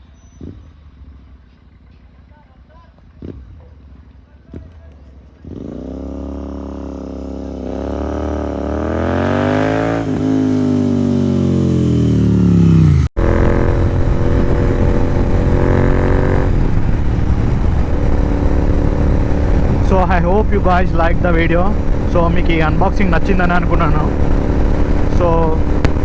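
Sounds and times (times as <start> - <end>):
motorcycle engine revving: 0.0 - 26.0
rushing noise: 11.7 - 26.0.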